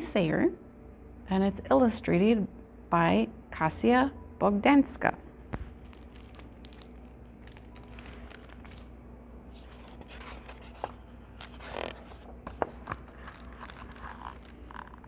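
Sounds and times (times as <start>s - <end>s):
paper rustling: 5.5s - 15.0s.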